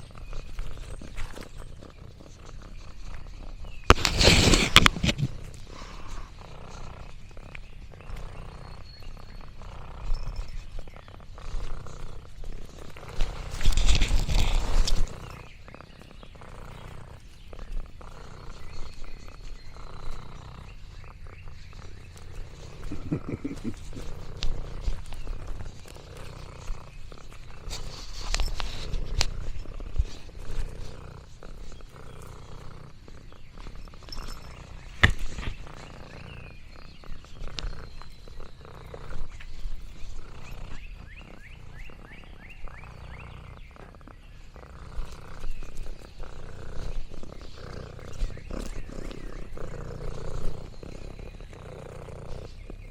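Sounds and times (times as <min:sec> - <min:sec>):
cat purring: 0:00.0 - 0:52.9.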